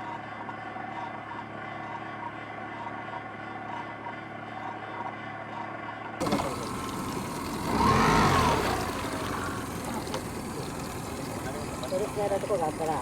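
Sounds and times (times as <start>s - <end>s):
engine running: 6.2s - 13.0s
louder engine note rising and falling: 6.2s - 13.0s.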